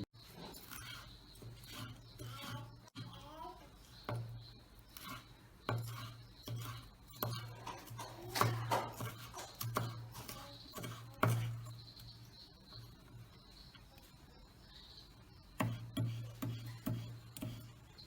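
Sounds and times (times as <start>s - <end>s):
utensils and dishes clinking: 5.7s - 11.8s.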